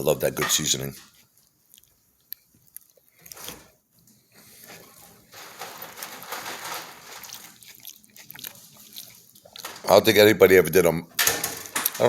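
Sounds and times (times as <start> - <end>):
person chewing salad: 1.4 - 3.6, 7.2 - 9.6.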